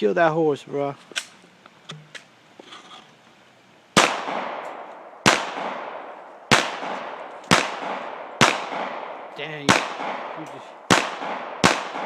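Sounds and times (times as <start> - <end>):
handgun shots echoing: 4.0 - 12.0.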